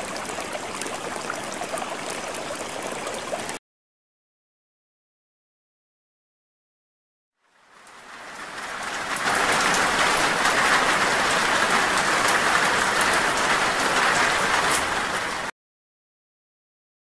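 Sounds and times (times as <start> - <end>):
rain-like hiss: 7.4 - 15.5.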